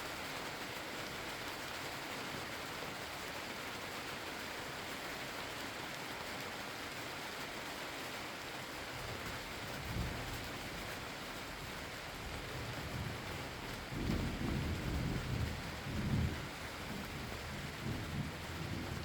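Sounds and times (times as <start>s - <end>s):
steady rain: 0.0s - 19.0s
low rumble of thunder: 9.6s - 10.8s, 12.2s - 19.0s.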